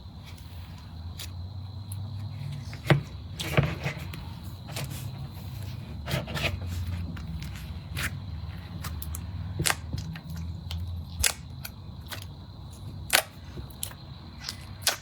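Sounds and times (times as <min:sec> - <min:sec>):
slime popping and crackling: 0:13.1 - 0:15.0.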